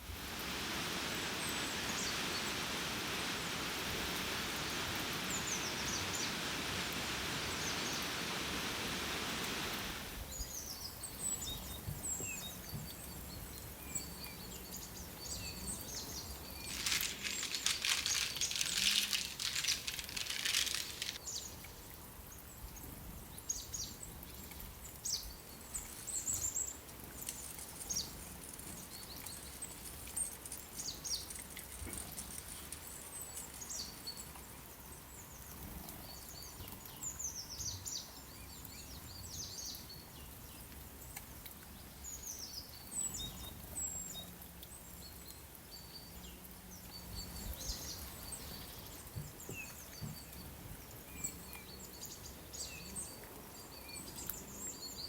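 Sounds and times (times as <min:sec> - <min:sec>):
faint steady hiss: 0:00.0 - 0:55.0
small birds chirping: 0:10.2 - 0:21.7, 0:23.4 - 0:41.1, 0:41.7 - 0:55.0.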